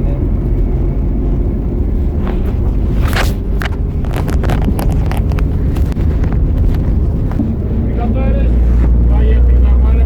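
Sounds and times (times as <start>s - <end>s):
wind noise: 0.0s - 9.2s
vehicle rumble: 0.0s - 10.0s.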